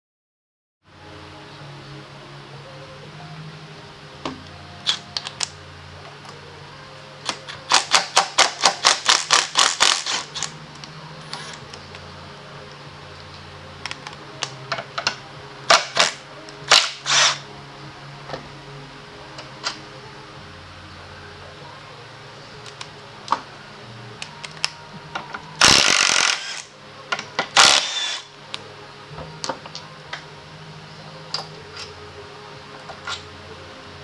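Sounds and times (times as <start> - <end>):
ratchet clicking: 7.2 - 12.0, 13.8 - 17.4, 24.2 - 28.3.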